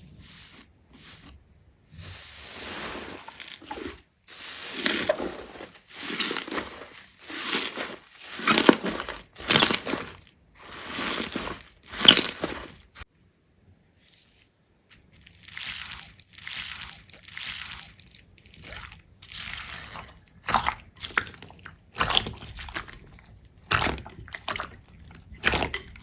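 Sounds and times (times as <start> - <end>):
slime squishing by hand: 15.4 - 26.0.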